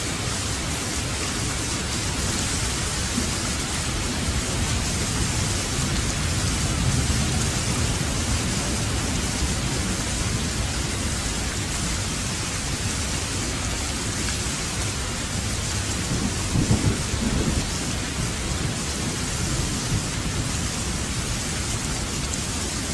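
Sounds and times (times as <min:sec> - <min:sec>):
heavy rain: 0:00.0 - 0:22.9
low rolling thunder: 0:15.4 - 0:21.4.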